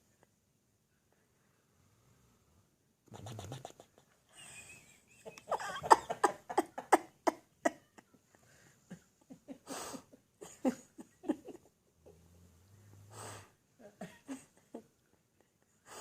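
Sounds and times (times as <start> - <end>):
dog blowing loose lips: 3.1 - 3.9
dog breathy exhale: 13.1 - 13.6.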